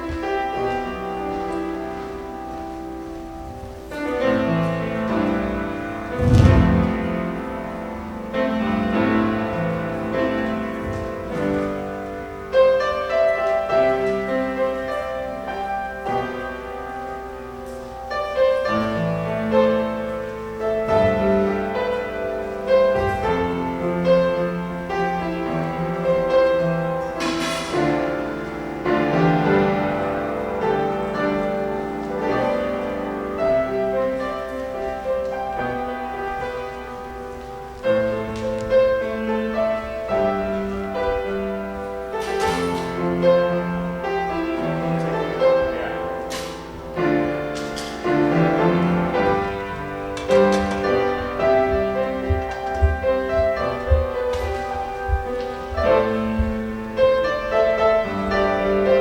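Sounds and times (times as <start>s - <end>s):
piano piece: 0.0s - 59.0s.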